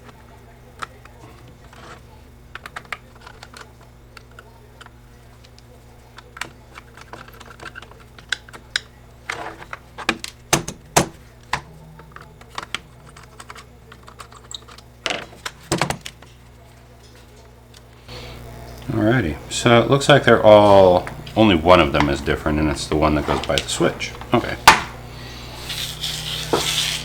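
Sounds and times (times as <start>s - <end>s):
screws and tools clattering: 6.2s - 17.4s.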